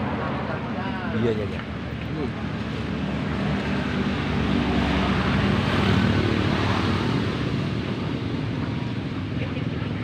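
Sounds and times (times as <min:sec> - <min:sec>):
road noise: 0:00.0 - 0:10.0
vehicle engine passing by: 0:02.6 - 0:09.1.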